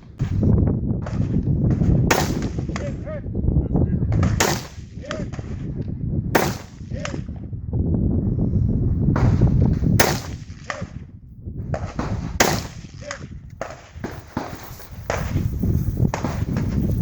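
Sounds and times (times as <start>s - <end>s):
low rumble: 0.0s - 10.0s
rifle shots: 1.0s - 3.0s, 4.2s - 5.7s, 6.3s - 7.3s, 9.2s - 11.0s, 11.8s - 15.4s.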